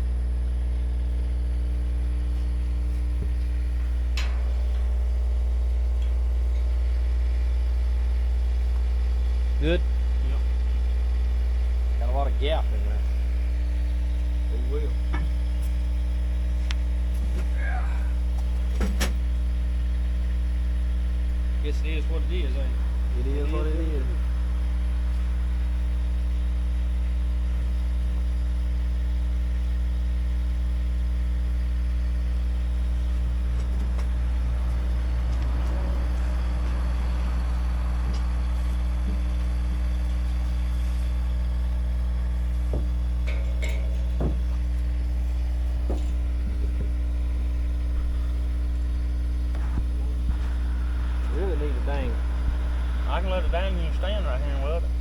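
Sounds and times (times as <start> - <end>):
engine idling: 0.0 - 55.0
sharp knocks or clanks: 42.7 - 44.6.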